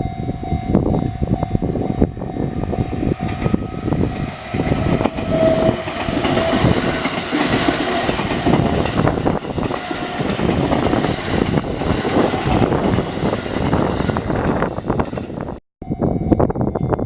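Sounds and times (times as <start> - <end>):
train wheels clattering over rail joints: 4.2 - 15.6.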